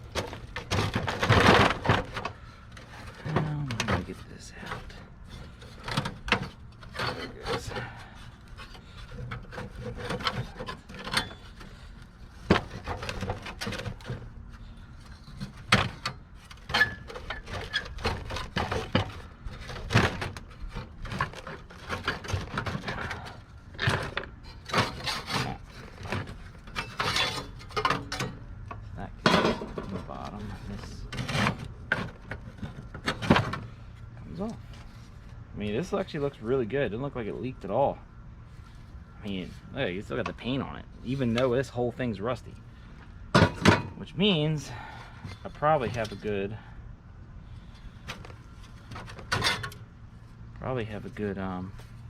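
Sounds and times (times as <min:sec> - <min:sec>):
rusty metal parts clanking: 0:00.0 - 0:35.4, 0:39.3 - 0:46.7, 0:47.6 - 0:49.9.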